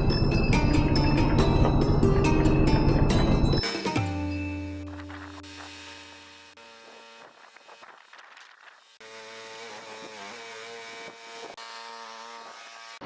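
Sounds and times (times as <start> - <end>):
sawmill motor humming: 4.8 - 13.0.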